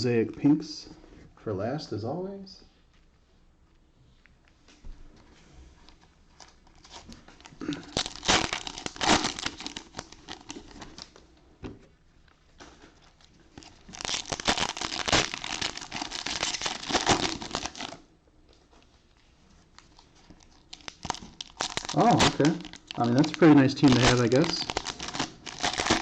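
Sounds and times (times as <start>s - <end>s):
cellophane crinkling and tearing: 5.9s - 11.2s, 12.2s - 18.0s, 18.8s - 26.0s.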